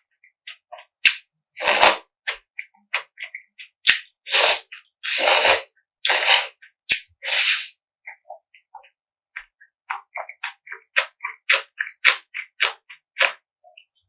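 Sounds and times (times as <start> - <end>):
wet mouth clicks and smacks: 0.5 - 14.0
loud noodle slurps: 1.1 - 2.1, 3.9 - 7.7.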